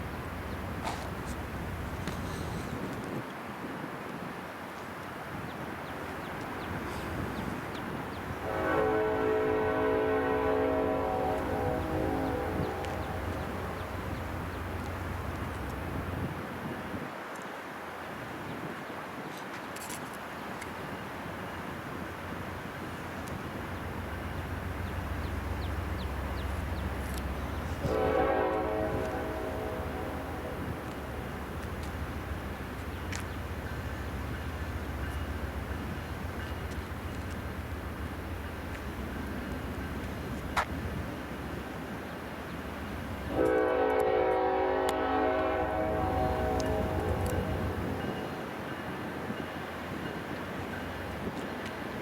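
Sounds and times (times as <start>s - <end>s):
diesel locomotive engine rumbling: 0.0s - 3.2s, 4.9s - 17.1s, 20.2s - 52.0s
air horn blast: 8.4s - 13.8s, 27.8s - 31.4s, 43.3s - 48.0s.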